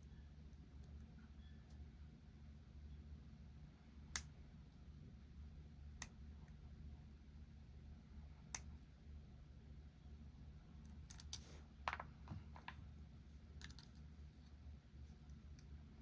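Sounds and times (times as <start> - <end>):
lock picks clicking: 11.0 - 11.4, 13.6 - 14.0.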